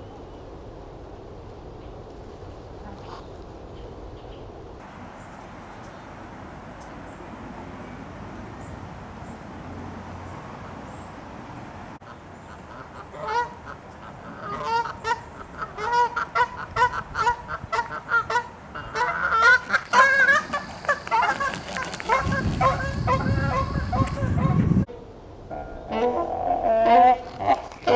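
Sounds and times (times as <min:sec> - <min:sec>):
geese honking: 0:04.9 - 0:24.8.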